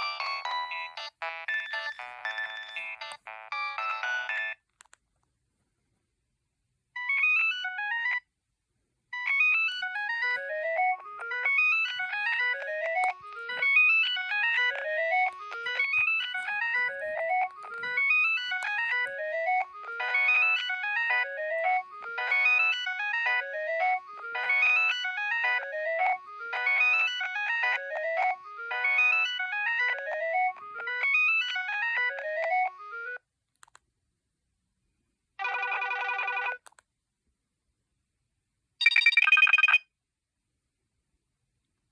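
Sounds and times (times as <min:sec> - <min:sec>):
mobile phone ringtone: 0:00.0 - 0:04.6, 0:07.0 - 0:08.3, 0:09.1 - 0:33.2, 0:35.4 - 0:36.6, 0:38.8 - 0:39.9.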